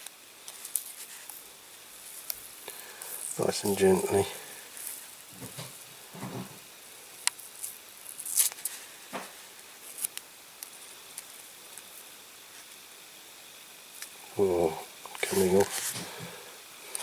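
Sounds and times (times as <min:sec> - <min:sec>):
masking tape peeling off metal: 0:02.1 - 0:06.6, 0:07.6 - 0:08.8.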